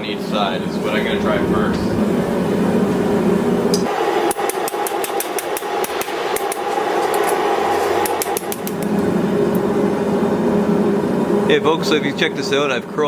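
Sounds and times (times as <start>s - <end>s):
steady drone: 0.0s - 13.0s
hammer striking steel on anvil: 3.8s - 8.9s.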